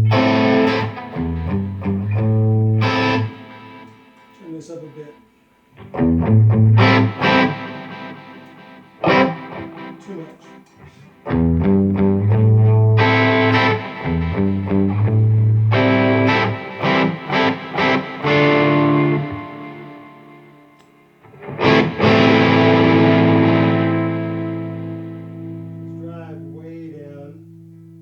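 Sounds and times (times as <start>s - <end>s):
overdriven electric guitar: 0.0s - 4.4s, 5.7s - 26.2s.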